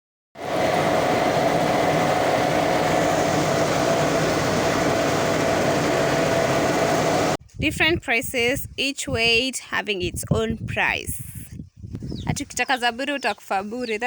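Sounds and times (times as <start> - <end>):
milling machine running: 0.4 - 7.4.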